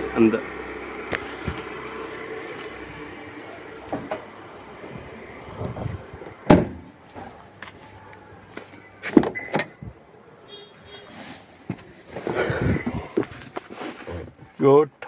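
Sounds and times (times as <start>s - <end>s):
latch clicks and knocks: 5.5s - 7.3s
car door thumping shut: 5.6s - 7.3s.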